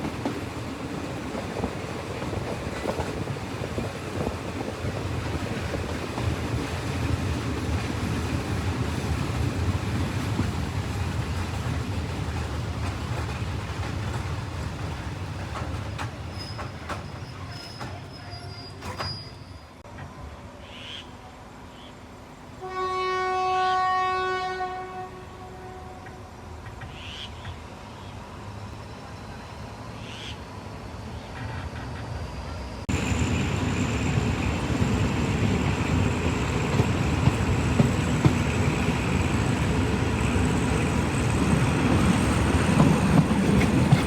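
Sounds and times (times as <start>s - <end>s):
rail clicks: 0.0s - 20.2s, 31.0s - 44.0s
train running on track: 0.0s - 44.0s
train horn blast: 22.6s - 26.4s.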